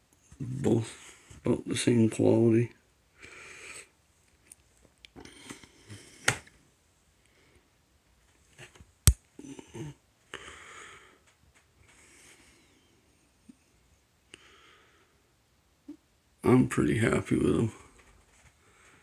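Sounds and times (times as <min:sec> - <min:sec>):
soft breaths or sniffs: 0:03.2 - 0:04.0, 0:10.3 - 0:15.3.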